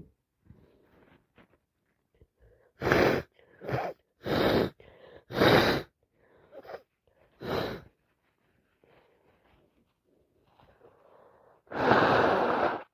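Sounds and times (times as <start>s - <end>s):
person breathing: 2.2s - 8.1s, 10.4s - 12.9s
person sneezing: 2.8s - 5.9s.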